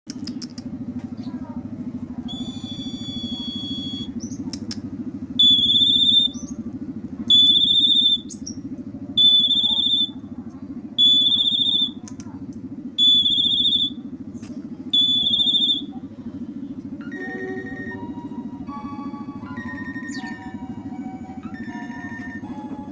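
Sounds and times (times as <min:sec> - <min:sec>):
steady low hum: 0:00.1 - 0:22.9
bird whistling: 0:02.2 - 0:04.6, 0:05.4 - 0:06.6, 0:07.3 - 0:10.3, 0:11.0 - 0:12.0, 0:13.0 - 0:14.0, 0:14.9 - 0:15.9, 0:19.7 - 0:20.7.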